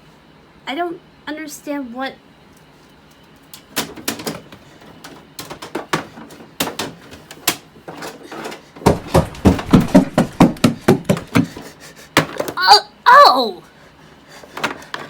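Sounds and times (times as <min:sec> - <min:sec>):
urgent pounding on a door: 0:08.8 - 0:11.6
scattered knocks and clicks: 0:08.9 - 0:11.6.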